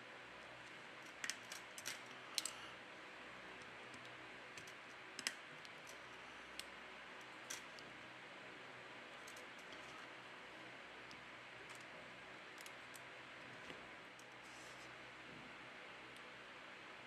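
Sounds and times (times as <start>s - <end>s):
small tools clicking and tapping: 1.1s - 2.7s, 3.6s - 6.7s.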